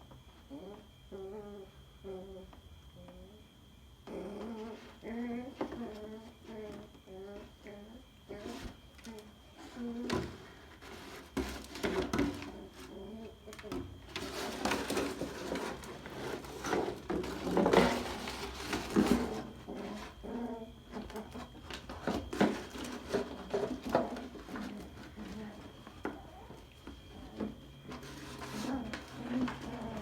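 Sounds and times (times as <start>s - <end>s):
puppy growling: 0.5s - 2.5s, 4.0s - 8.5s, 12.4s - 21.6s, 22.6s - 30.0s.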